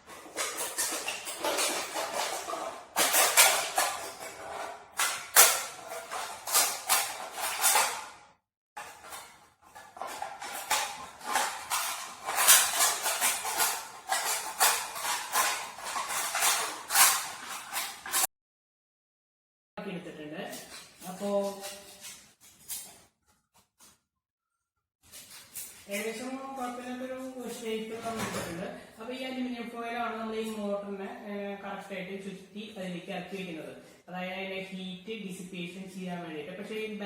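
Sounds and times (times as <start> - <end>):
metal can being cut: 0.0 - 8.2, 8.8 - 18.3.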